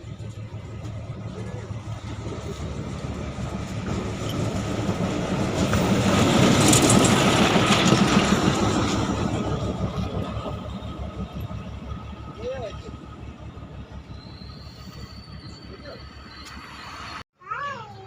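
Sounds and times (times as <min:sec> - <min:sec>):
train wheels clattering over rails: 0:00.0 - 0:16.6.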